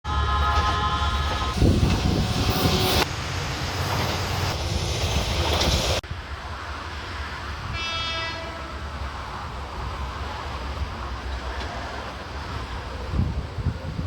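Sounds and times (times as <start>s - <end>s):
train horn: 0.1s - 3.0s, 7.7s - 8.9s.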